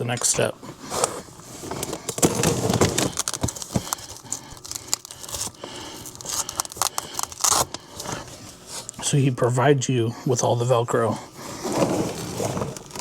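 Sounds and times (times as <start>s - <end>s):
fabric crinkling and rustling: 0.3s - 9.0s, 11.4s - 13.0s
velcro tearing: 3.0s - 9.0s.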